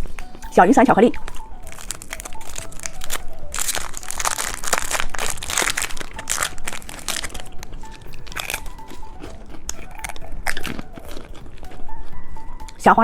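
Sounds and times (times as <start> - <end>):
candy crunching: 0.0 - 12.9
wrapper crinkling: 1.1 - 11.7.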